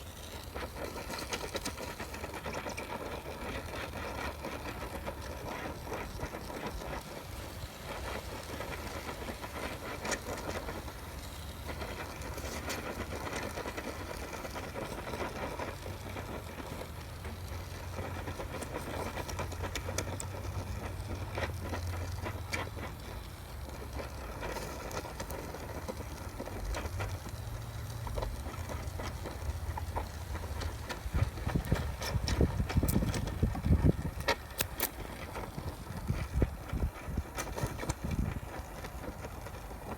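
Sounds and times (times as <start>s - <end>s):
gas torch flame hissing: 0.0s - 39.9s.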